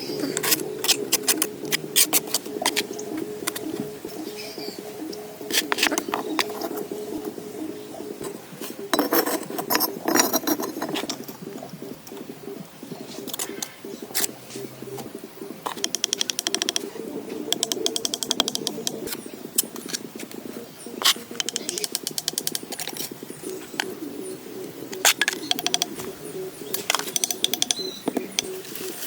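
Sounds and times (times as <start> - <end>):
dove cooing: 0.0 - 29.0
fast run of clicks: 0.2 - 4.0, 15.0 - 20.4, 21.0 - 24.0, 24.9 - 28.6.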